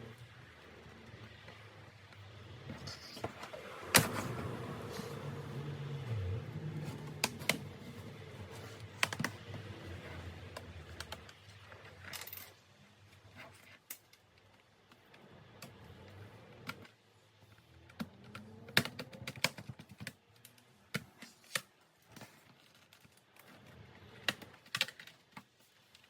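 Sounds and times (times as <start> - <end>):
faint low hum: 0.0 - 19.3.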